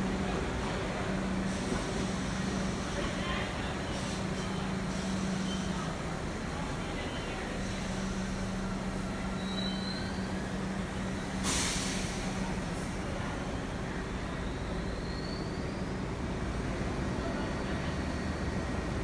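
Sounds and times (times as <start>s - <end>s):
subway train humming: 0.0s - 19.0s
brake air hiss: 11.0s - 13.0s.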